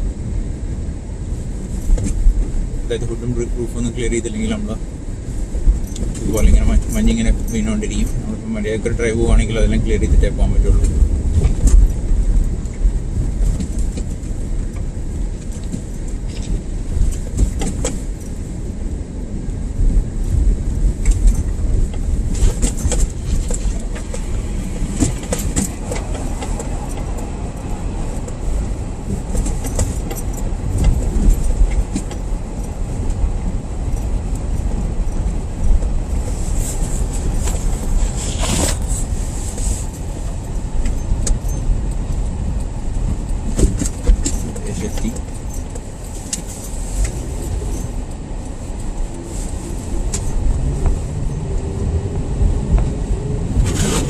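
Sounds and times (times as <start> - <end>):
car road and engine rumble: 0.0 - 54.0.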